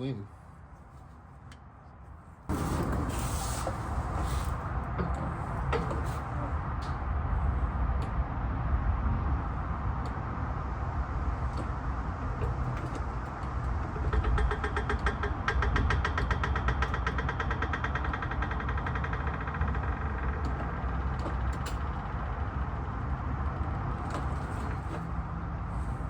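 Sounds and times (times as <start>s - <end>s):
steady low rumble: 0.0s - 16.2s, 18.2s - 26.0s
rapid mechanical clicking: 11.3s - 24.8s.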